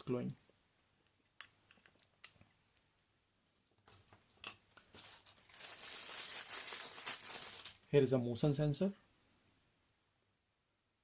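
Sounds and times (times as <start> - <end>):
plastic packaging crinkling: 4.8 - 7.8.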